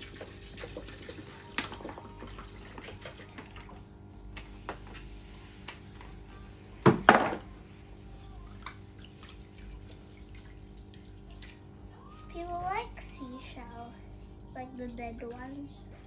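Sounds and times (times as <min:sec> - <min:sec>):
water swishing in a bowl: 0:00.0 - 0:04.3, 0:07.7 - 0:13.5.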